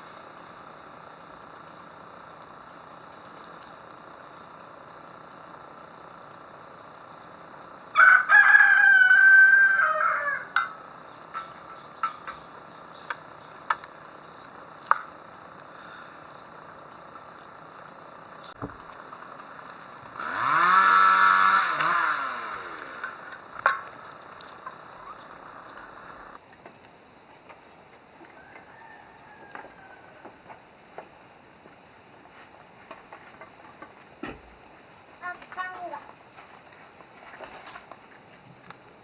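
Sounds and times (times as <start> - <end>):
high-pitched insect drone: 0.0 - 26.5
small engine revving: 18.4 - 26.4.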